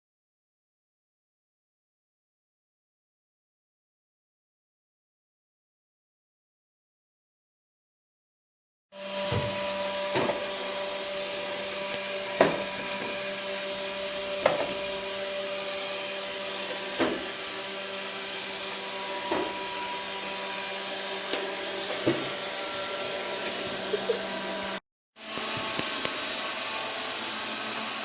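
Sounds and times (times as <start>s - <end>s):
robot vacuum motor humming: 9.0s - 28.0s.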